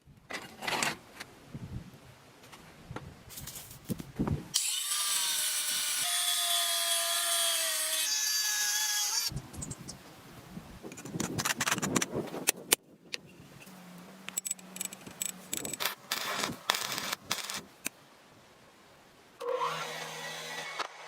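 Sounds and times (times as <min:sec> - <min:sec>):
metal tools clinking and scraping: 0:14.3 - 0:15.9.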